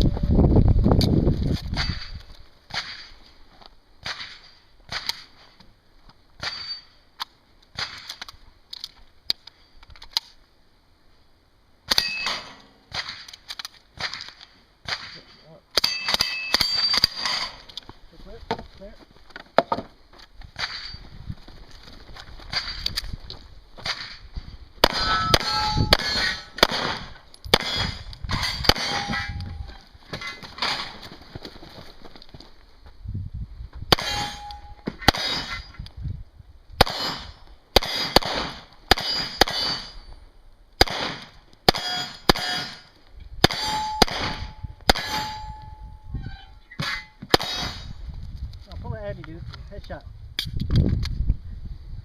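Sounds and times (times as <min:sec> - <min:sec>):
steel targets clanging: 0:06.4 - 0:07.0, 0:11.9 - 0:13.3, 0:14.9 - 0:17.7, 0:24.8 - 0:26.7, 0:27.3 - 0:31.0, 0:34.0 - 0:35.8, 0:38.9 - 0:40.1, 0:41.7 - 0:46.0, 0:46.7 - 0:47.9
submachine gun firing: 0:40.8 - 0:42.7.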